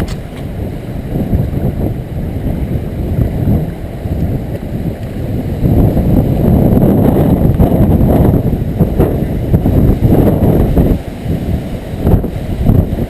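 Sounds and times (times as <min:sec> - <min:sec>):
storm wind buffeting microphone: 0:00.0 - 0:13.0.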